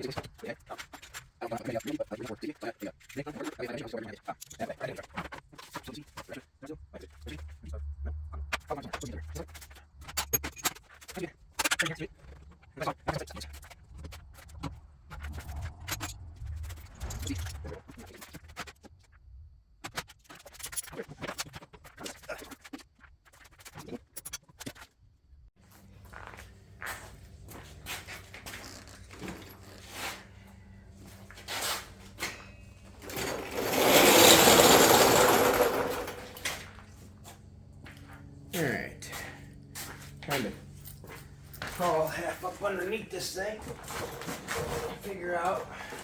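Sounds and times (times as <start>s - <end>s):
hand tools clicking and scraping: 26.9s - 38.2s, 39.0s - 46.0s.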